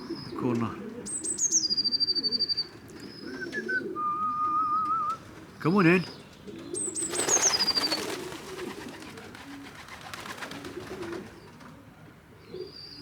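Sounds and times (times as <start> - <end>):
pigeons cooing: 0.0 - 13.0
rustling clatter of wings: 6.1 - 11.8.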